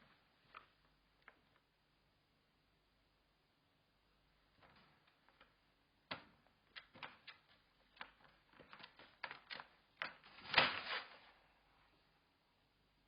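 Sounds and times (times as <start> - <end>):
puppy clicks and knocks: 4.6 - 10.3.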